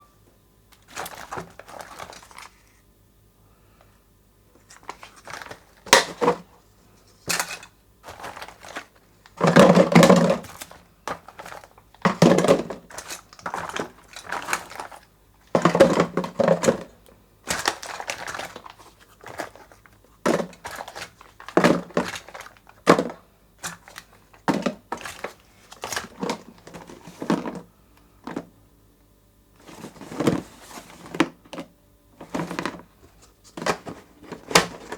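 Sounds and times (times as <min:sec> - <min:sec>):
plastic wrappers crinkling: 0:00.8 - 0:02.8, 0:04.6 - 0:06.5, 0:07.2 - 0:27.6, 0:32.2 - 0:34.9.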